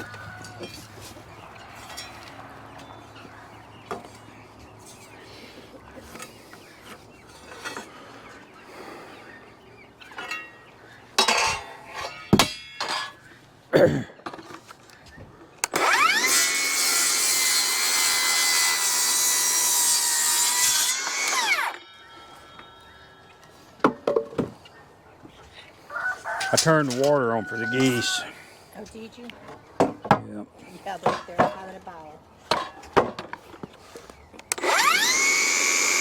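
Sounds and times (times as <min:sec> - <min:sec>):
power saw cutting wood: 0:15.6 - 0:23.4, 0:26.5 - 0:28.3, 0:34.4 - 0:36.0.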